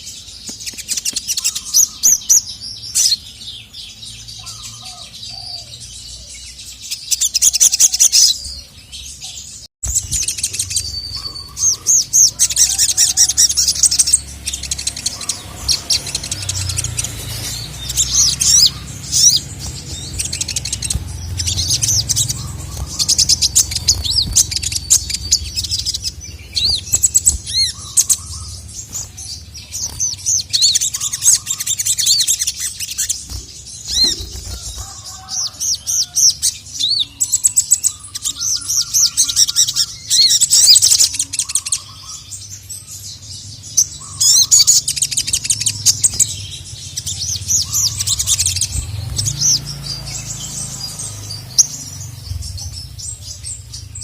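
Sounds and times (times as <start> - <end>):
bird singing high chattering phrases: 0.0 - 54.0
steady low hum: 13.8 - 30.6.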